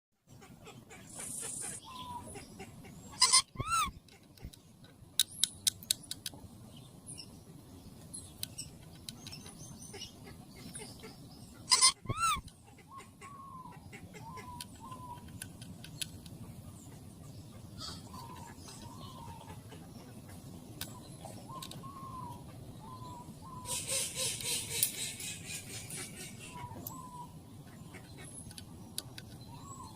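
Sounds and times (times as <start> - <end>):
parrot squawks: 3.1 - 3.9, 11.7 - 12.4.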